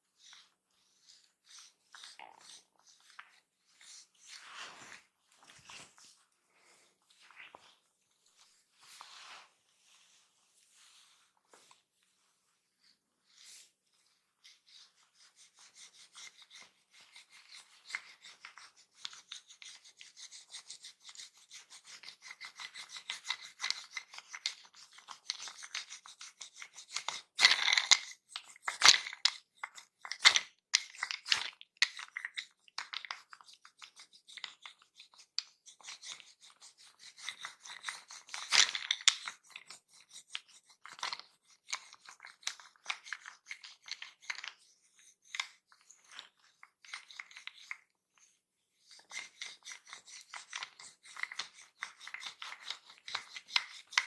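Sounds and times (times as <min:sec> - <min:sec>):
soft scratchy rubbing on hair: 0:01.2 - 0:16.7.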